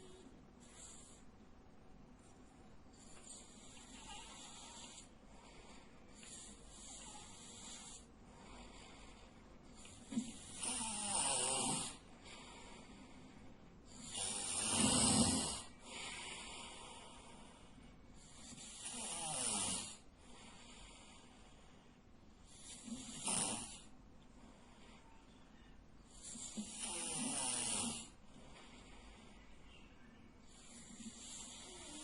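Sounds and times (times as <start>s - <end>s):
man snoring loudly: 10.3s - 12.0s, 14.0s - 15.7s, 18.4s - 20.0s, 22.6s - 23.8s, 26.2s - 28.2s, 30.7s - 32.0s.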